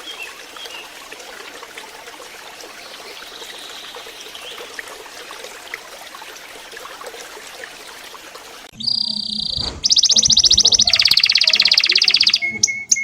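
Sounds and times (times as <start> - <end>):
water trickling: 0.0 - 12.4
high bird note: 8.8 - 12.4.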